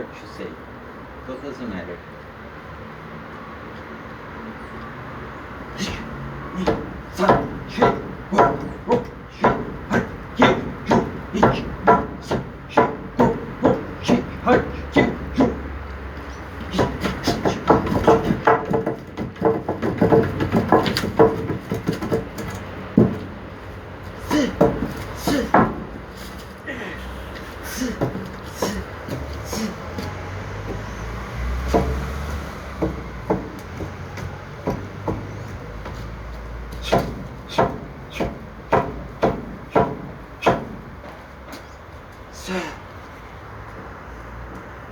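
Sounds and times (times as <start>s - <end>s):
hands knocking on wooden post: 5.8s - 23.4s, 24.3s - 26.0s, 27.8s - 41.6s.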